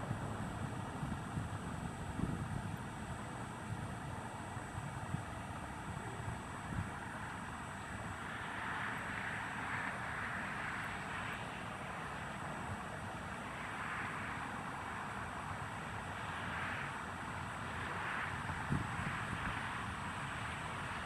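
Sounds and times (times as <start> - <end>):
wind rumble on microphone: 0.0 - 8.2, 18.2 - 21.0.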